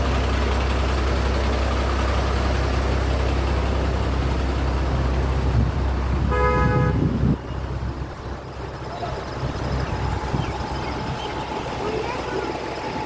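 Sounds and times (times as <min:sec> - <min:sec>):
water rushing through gates: 0:00.0 - 0:13.0
horn toot: 0:06.2 - 0:07.2.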